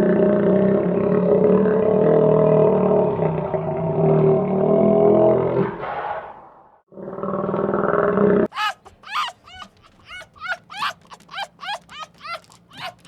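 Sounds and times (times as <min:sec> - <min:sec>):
deep animal roar: 0:00.0 - 0:05.8
puppy yelping and whimpering: 0:08.5 - 0:13.0.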